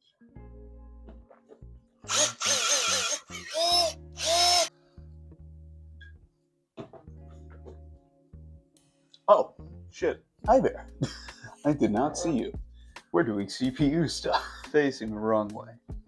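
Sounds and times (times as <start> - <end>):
small power tool motor whirring: 2.1 - 4.7
background beat with bass: 10.5 - 15.2.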